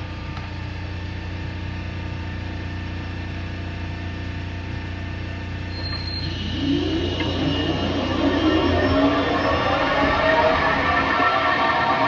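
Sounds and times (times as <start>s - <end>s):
lathe humming: 5.8s - 12.0s.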